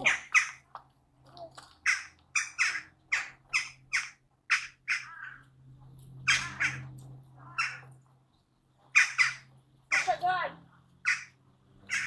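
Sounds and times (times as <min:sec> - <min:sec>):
bird squawking: 0:00.0 - 0:00.6, 0:01.8 - 0:05.5, 0:06.2 - 0:08.0, 0:08.9 - 0:10.3, 0:11.0 - 0:12.0.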